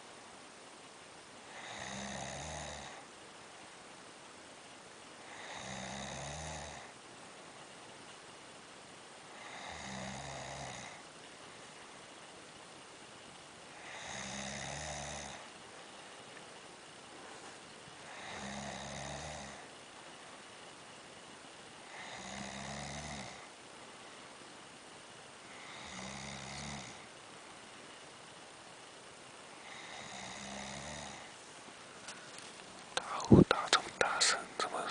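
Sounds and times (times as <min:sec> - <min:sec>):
steady background hiss: 0:00.0 - 0:34.9
person snoring heavily: 0:01.5 - 0:03.0, 0:05.3 - 0:06.9, 0:09.4 - 0:11.0, 0:13.8 - 0:15.4, 0:18.1 - 0:19.6, 0:21.9 - 0:23.5, 0:25.5 - 0:27.0, 0:29.6 - 0:31.3.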